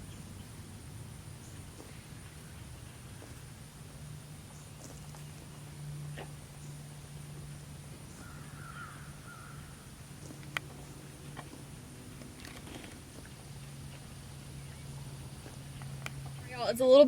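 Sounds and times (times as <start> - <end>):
steady low hum: 0.0 - 17.0
bird calling: 7.9 - 11.6.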